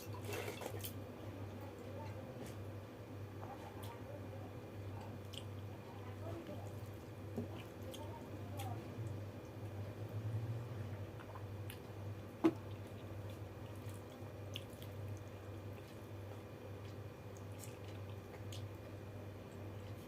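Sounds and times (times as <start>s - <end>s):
wet chewing: 5.0s - 5.7s, 6.4s - 9.6s, 11.1s - 20.0s.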